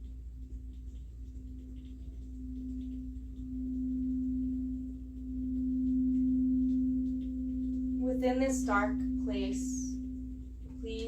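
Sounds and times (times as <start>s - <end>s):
singing bowl low tone: 0.0s - 11.0s.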